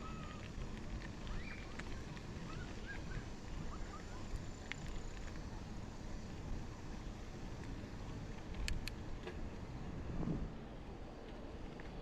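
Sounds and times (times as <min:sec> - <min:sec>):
small birds chirping: 0:01.3 - 0:04.3.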